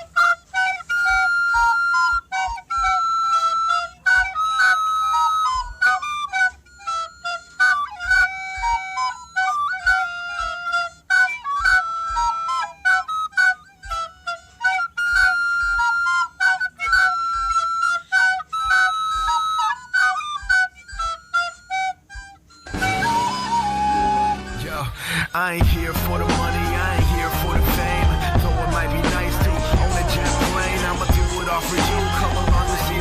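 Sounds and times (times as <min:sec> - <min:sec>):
flute melody: 0:00.0 - 0:33.0
beat with deep kick drum: 0:25.6 - 0:33.0.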